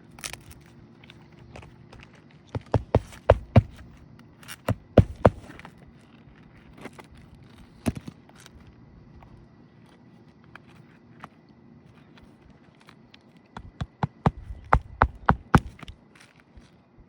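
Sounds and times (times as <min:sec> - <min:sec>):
nails hammered into roof shingles: 0:02.6 - 0:03.8, 0:04.7 - 0:05.6, 0:13.6 - 0:15.9.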